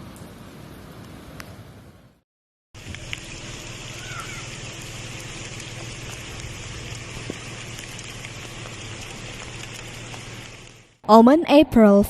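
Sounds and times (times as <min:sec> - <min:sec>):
heavy rain hissing: 0:02.8 - 0:11.0.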